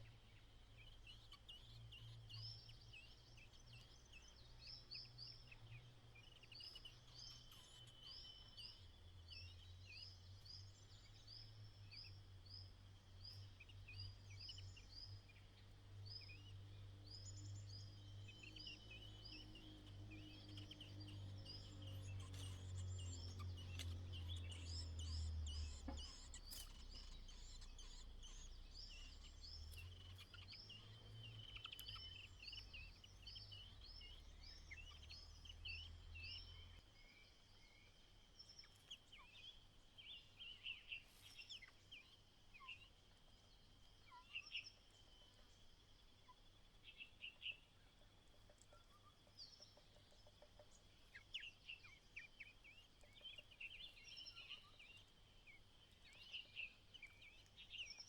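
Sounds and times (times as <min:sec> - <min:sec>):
bird chirps: 0:17.1 - 0:42.9, 0:48.6 - 0:58.0.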